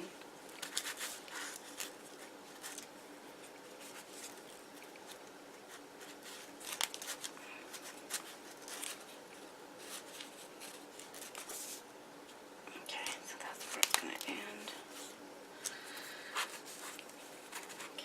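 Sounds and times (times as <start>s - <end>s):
thread wrapping rustling and clicks: 6.1s - 15.8s.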